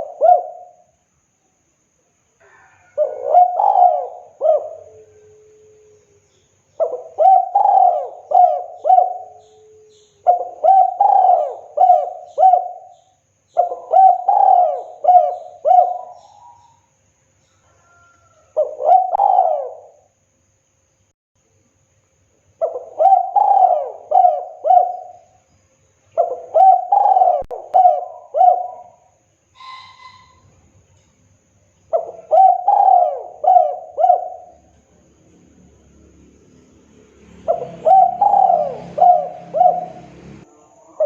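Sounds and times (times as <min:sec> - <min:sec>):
dove cooing: 0:00.0 - 0:00.9, 0:02.4 - 0:06.0, 0:06.8 - 0:16.8, 0:17.8 - 0:20.1, 0:22.6 - 0:25.4, 0:26.2 - 0:30.4, 0:31.9 - 0:34.8, 0:37.4 - 0:41.0.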